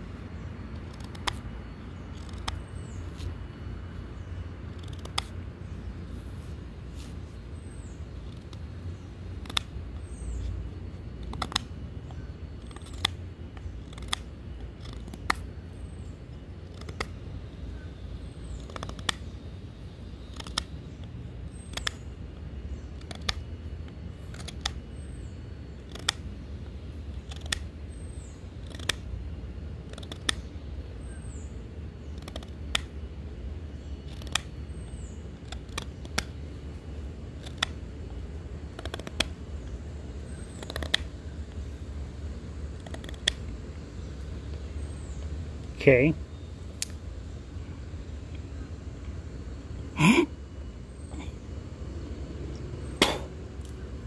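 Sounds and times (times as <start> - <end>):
low background rumble: 0.0 - 54.0
knife cutting snicks: 53.0 - 53.8.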